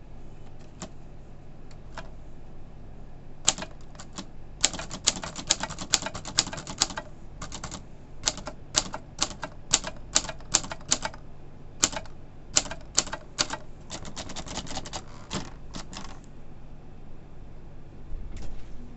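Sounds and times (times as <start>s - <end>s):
manual typewriter typing: 0.5s - 0.9s, 1.7s - 2.1s, 3.5s - 11.2s, 11.8s - 16.3s.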